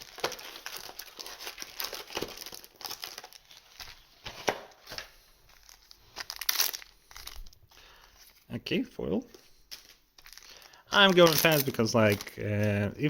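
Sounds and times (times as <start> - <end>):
wrappers crinkling and tearing: 0.0 - 8.6, 9.4 - 13.0.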